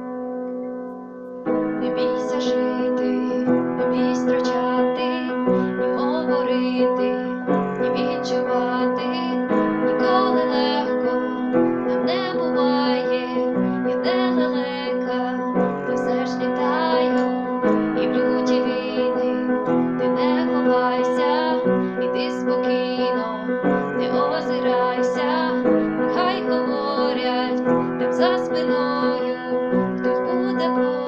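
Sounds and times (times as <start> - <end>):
keyboard instrumental music: 0.0 - 2.0, 2.6 - 20.6.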